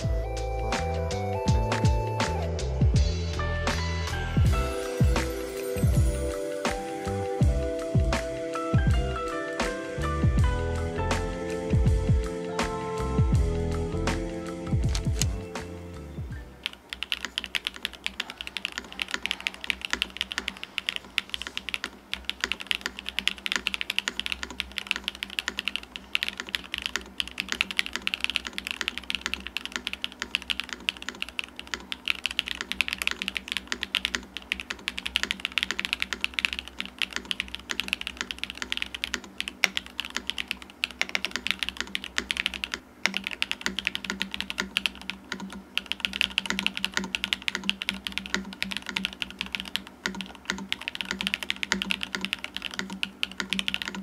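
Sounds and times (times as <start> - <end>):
fast mechanical keyboard typing: 14.7 - 15.4, 16.6 - 54.0.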